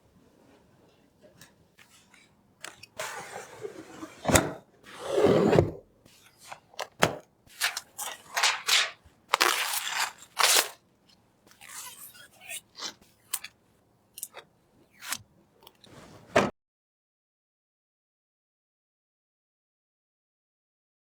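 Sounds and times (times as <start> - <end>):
plastic packaging crinkling: 7.6 - 10.8.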